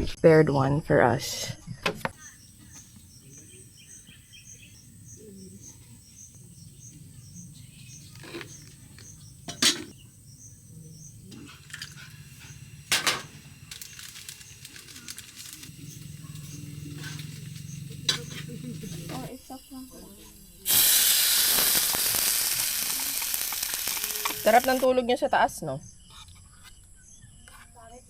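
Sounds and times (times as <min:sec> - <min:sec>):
low background hum: 0:02.1 - 0:20.6
crickets chirping: 0:02.2 - 0:25.0.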